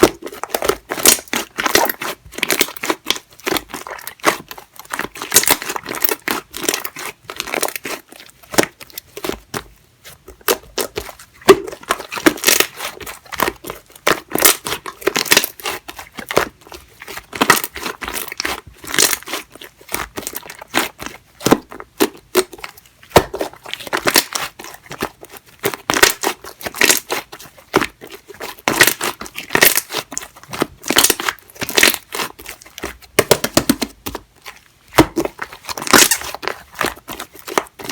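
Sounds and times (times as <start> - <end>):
slime squished crackling and popping: 0.0 - 9.6, 10.2 - 37.9.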